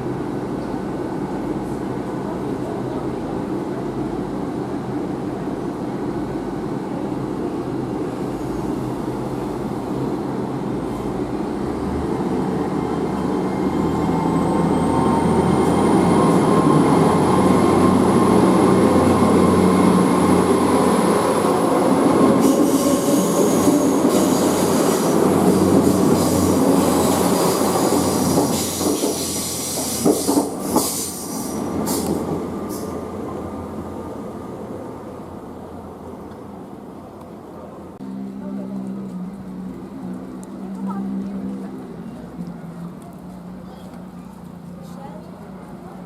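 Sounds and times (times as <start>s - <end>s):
train running noise: 6.4s - 33.3s.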